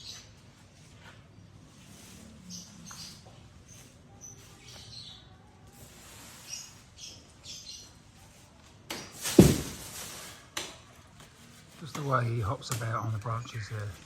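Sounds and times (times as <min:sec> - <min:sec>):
small birds chirping: 0:00.0 - 0:09.2, 0:11.8 - 0:14.0
loud thump with rushing noise: 0:09.2 - 0:10.0.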